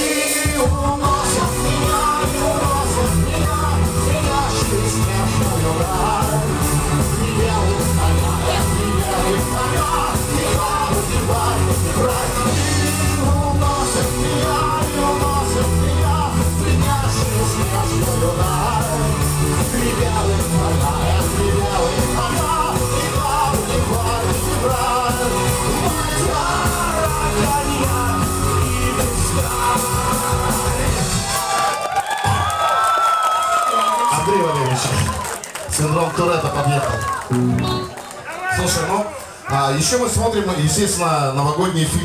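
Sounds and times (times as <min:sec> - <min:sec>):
person singing: 0:00.0 - 0:31.6
live rock band playing: 0:00.0 - 0:31.7, 0:37.2 - 0:38.2.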